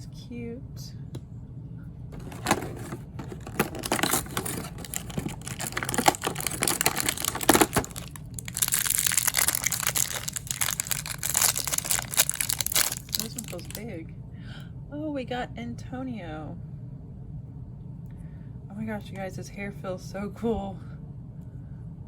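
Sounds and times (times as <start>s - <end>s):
plastic packaging crinkling and tearing: 2.2s - 13.8s.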